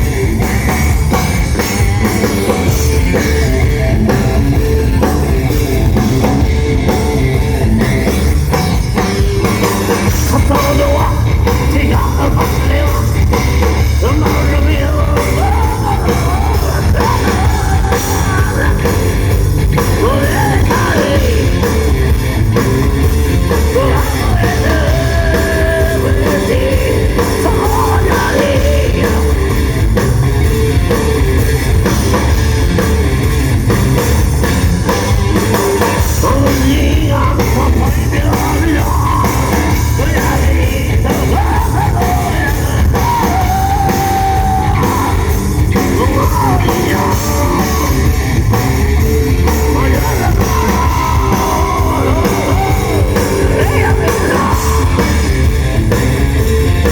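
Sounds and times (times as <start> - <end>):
drum kit beat: 0.0 - 56.9
heavy guitar: 0.0 - 56.9
person singing: 9.9 - 13.3, 13.9 - 19.1, 19.8 - 21.8, 23.5 - 29.4, 36.0 - 48.1, 49.3 - 55.4.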